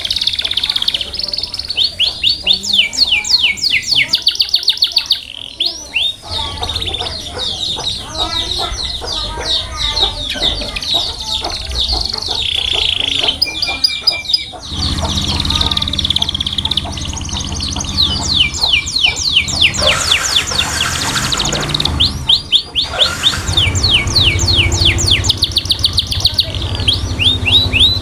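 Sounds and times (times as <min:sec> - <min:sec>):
canary singing: 0:00.0 - 0:28.0.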